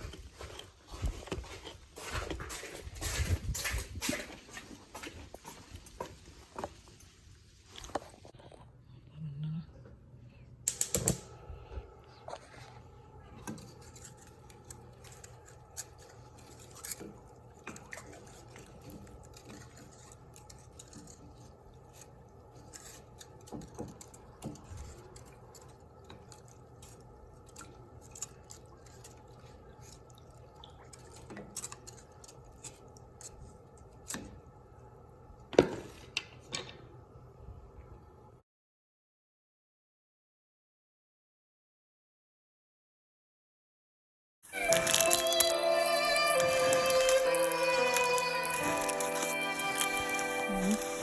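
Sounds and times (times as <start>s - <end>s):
steady low hum: 8.5s - 30.7s.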